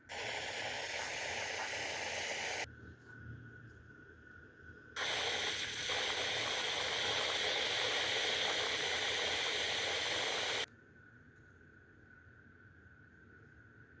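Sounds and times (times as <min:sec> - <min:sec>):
laptop speakers screeching hiss: 0:00.0 - 0:02.7, 0:05.0 - 0:10.7.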